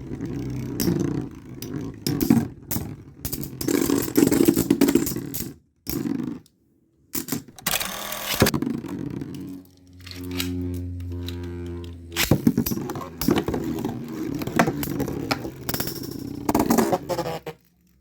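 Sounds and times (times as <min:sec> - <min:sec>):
spinning tops clattering and scraping: 0:00.1 - 0:06.2, 0:12.0 - 0:18.0.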